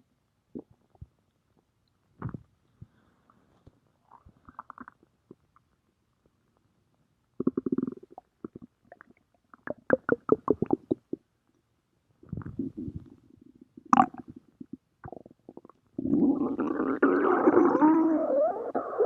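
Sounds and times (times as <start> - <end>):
stomach growling: 7.4 - 11.2, 12.2 - 13.2, 13.8 - 19.0.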